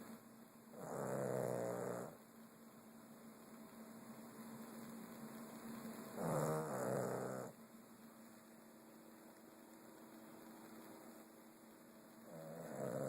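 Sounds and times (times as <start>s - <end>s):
faint steady hum: 0.0s - 13.0s
pet snoring: 0.7s - 2.2s, 6.2s - 7.6s, 12.2s - 13.0s.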